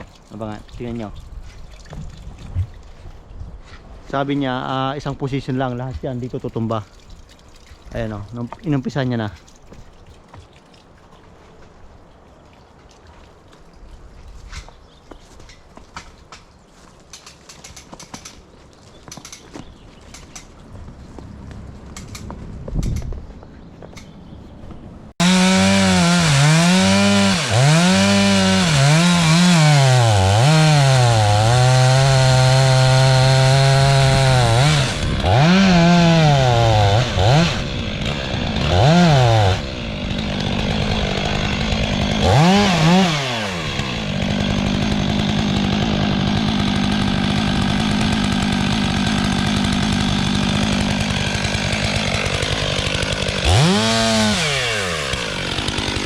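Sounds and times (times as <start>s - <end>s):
chainsaw engine revving: 25.2s - 56.0s.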